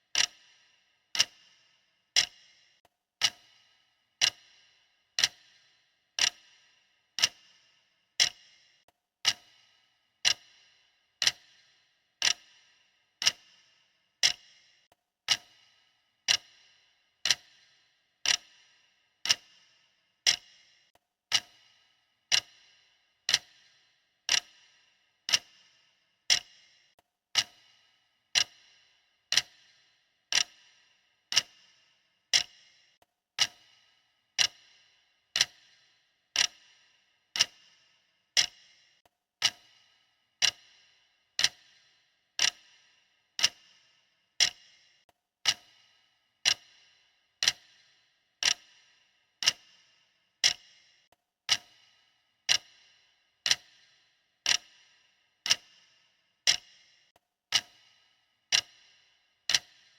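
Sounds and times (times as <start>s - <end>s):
clock ticking: 0.0s - 59.9s.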